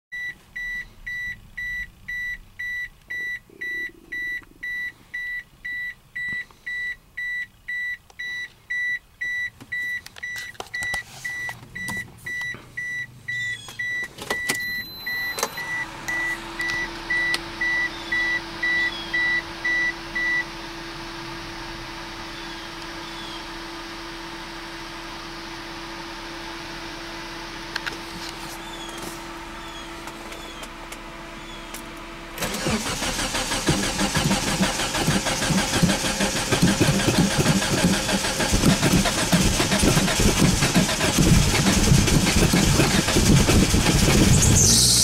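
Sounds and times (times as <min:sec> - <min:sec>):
car warning chime beeping: 0:00.1 - 0:20.5.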